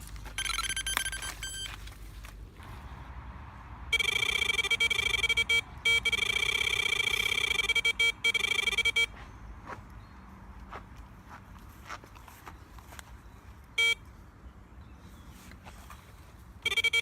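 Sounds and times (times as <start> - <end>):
electronic bite alarm tone: 3.9 - 9.1.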